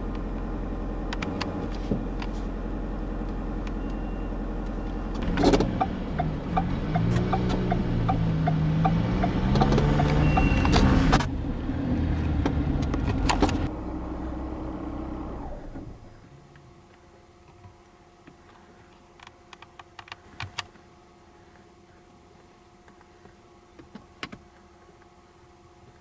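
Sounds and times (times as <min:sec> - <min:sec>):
faint steady hum: 0:13.6 - 0:26.0.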